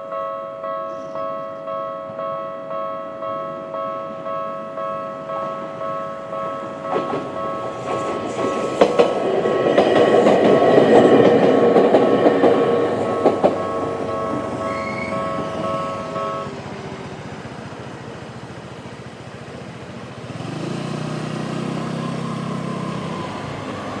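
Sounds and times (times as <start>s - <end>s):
level crossing warning bell: 0.0s - 19.9s
train wheels clacking on rail joints: 5.4s - 24.0s.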